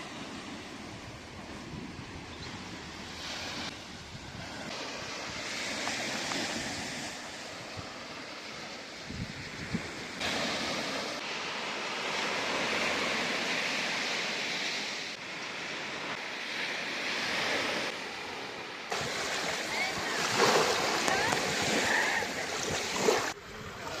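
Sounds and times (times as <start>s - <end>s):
sea waves washing on shore: 0.0s - 24.0s
wind bumps on microphone: 9.0s - 10.9s, 18.9s - 24.0s.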